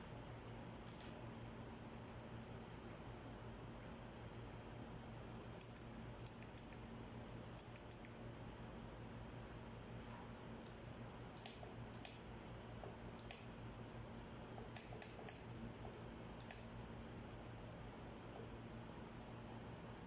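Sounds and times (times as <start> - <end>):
steady low hum: 0.0 - 20.0
sharp small clicks and taps: 5.6 - 6.9, 7.6 - 8.2, 11.4 - 12.2, 13.2 - 13.5, 14.7 - 15.5, 16.4 - 16.7.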